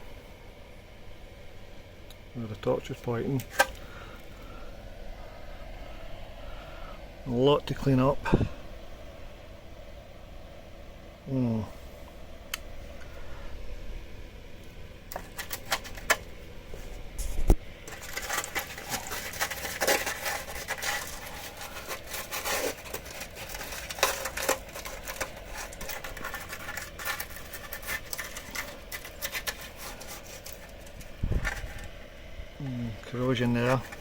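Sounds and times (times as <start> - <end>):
hand tool scraping metal: 17.9 - 31.9.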